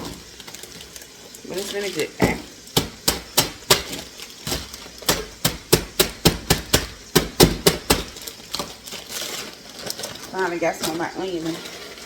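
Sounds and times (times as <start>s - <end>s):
knife chopping on cutting board: 2.2s - 8.1s.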